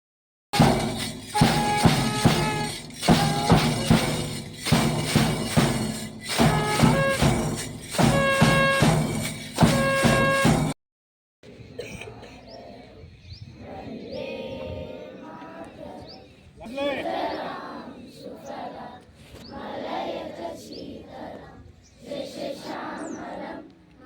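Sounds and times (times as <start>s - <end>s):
music with percussion beat: 0.6s - 10.8s.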